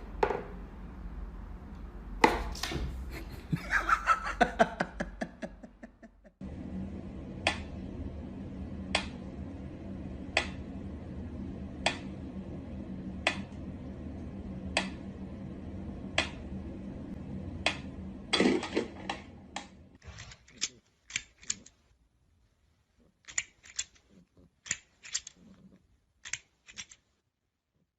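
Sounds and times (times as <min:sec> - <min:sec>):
steady low hum: 0:00.0 - 0:23.6.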